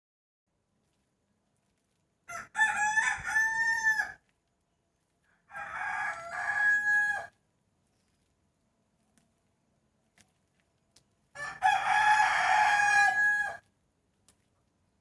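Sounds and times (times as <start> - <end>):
rooster crowing: 2.3 - 4.2, 5.3 - 7.4, 11.4 - 13.7.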